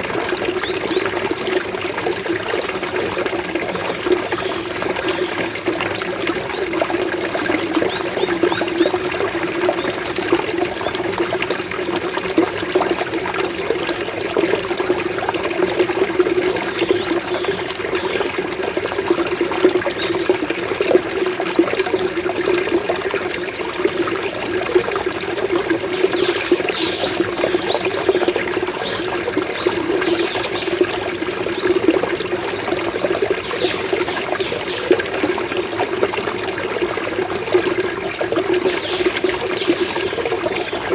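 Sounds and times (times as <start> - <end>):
running water gurgling: 0.0 - 40.9
birds calling: 25.8 - 31.8.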